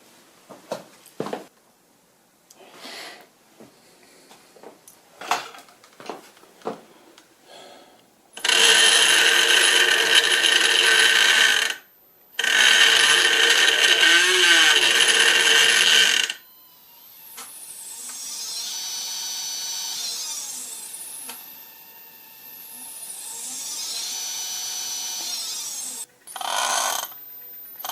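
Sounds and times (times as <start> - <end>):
motor whine: 8.4 - 11.8, 12.4 - 27.9.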